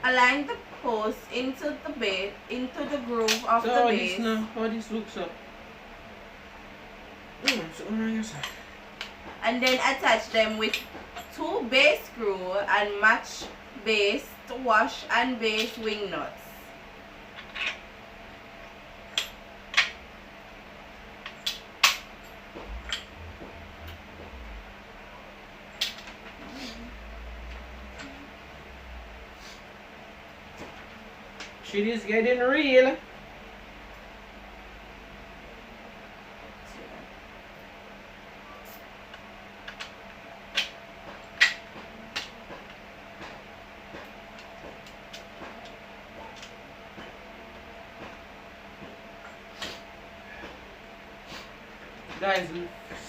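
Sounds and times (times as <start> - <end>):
low hum: 0.0 - 53.0
clicks and knocks of hardware: 17.4 - 17.8
low handling rumble: 22.4 - 31.2.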